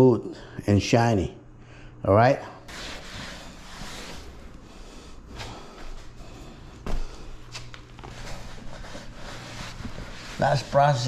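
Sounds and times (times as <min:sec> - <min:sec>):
cloth rubbing over tiles: 0:02.7 - 0:04.6, 0:07.5 - 0:11.0.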